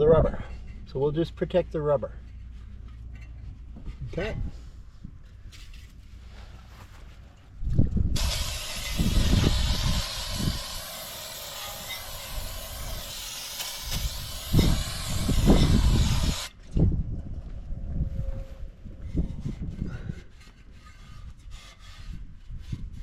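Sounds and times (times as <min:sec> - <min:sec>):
aerosol can spraying: 0:08.2 - 0:16.5.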